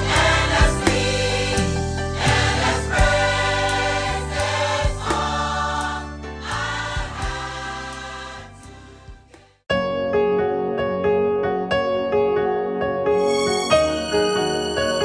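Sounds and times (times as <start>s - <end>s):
gospel choir singing: 0.0s - 9.6s.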